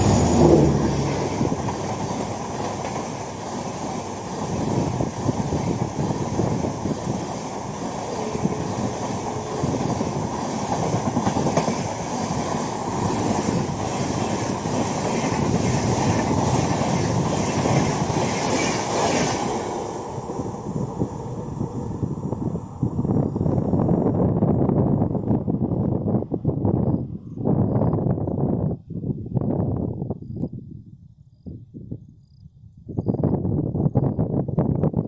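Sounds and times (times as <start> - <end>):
train wheels clattering: 0.0 - 19.8.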